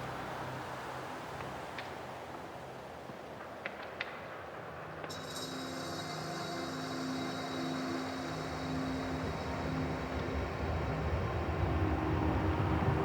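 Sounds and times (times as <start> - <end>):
high bell-like shimmer: 5.1 - 12.8
low droning rumble: 5.1 - 13.0.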